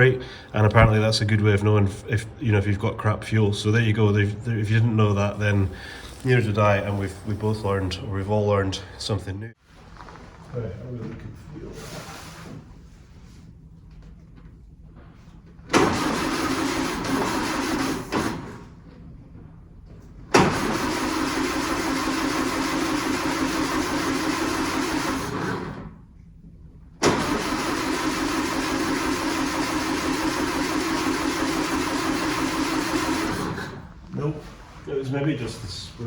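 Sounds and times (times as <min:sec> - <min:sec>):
starter motor cranking engine: 0:15.6 - 0:19.0, 0:20.3 - 0:26.0, 0:27.0 - 0:35.0.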